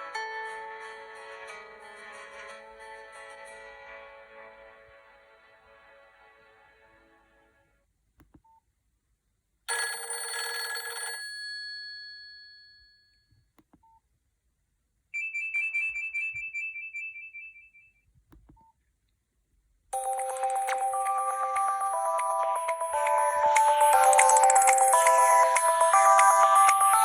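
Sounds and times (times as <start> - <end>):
phone ringtones: 9.7 - 11.6, 20.0 - 27.0
bright chime: 20.0 - 27.0.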